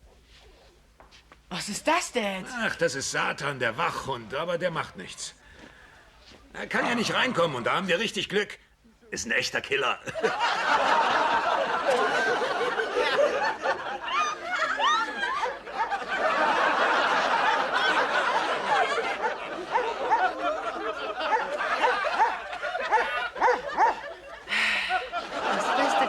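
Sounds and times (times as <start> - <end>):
studio audience laughing: 10.1 - 26.0.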